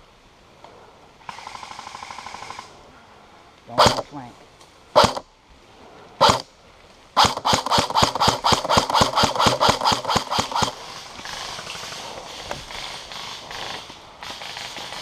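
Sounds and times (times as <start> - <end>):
airsoft gun firing: 3.8 - 4.0, 5.0 - 5.2, 6.2 - 6.4, 7.2 - 10.8.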